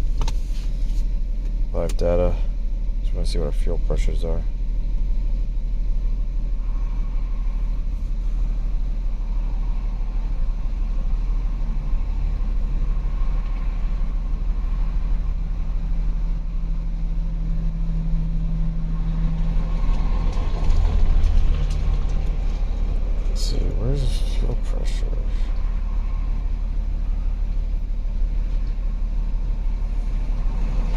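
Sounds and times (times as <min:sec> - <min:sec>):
car engine idling rough: 0:00.0 - 0:30.9.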